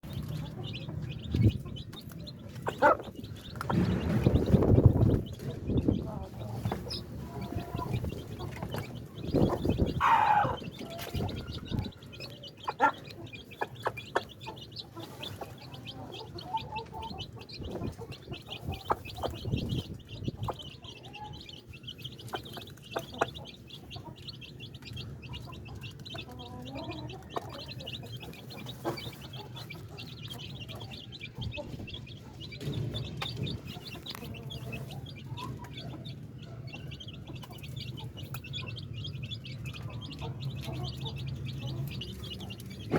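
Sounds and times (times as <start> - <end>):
chickens clucking: 0.0 - 42.9.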